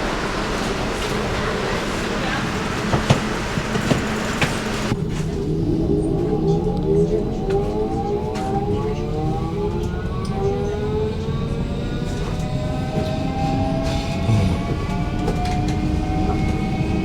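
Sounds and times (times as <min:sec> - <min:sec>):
electric train motors whining: 0:00.0 - 0:05.0.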